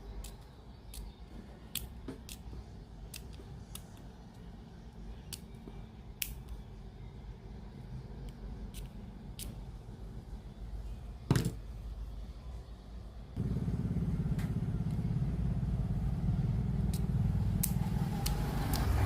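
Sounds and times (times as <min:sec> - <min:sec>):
low buzzing hum: 0:13.3 - 0:19.0.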